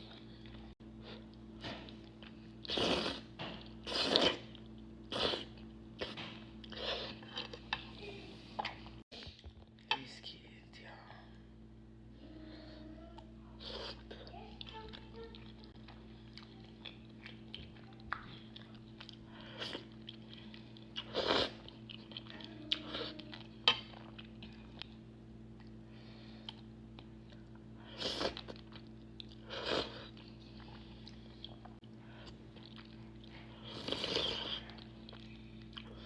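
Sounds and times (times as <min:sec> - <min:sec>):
low electrical hum: 0:00.0 - 0:36.0
wet chewing: 0:13.6 - 0:25.8, 0:26.4 - 0:36.0.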